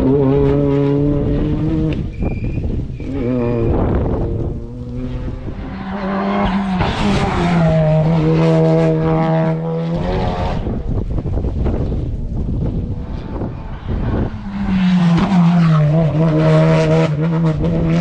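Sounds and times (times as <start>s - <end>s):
race car engine accelerating: 3.0s - 11.0s, 11.7s - 18.0s.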